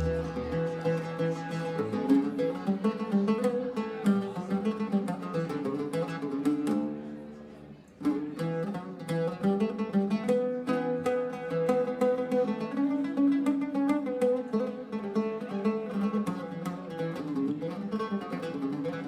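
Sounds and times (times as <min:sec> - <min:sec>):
plucked guitar music with beat: 0:00.0 - 0:03.4, 0:08.4 - 0:19.0.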